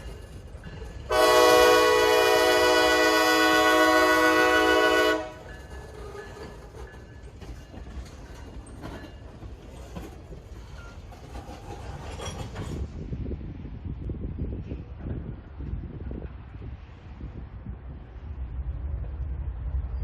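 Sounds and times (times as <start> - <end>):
train rolling: 0.0 - 20.0
locomotive air horn: 1.1 - 5.5.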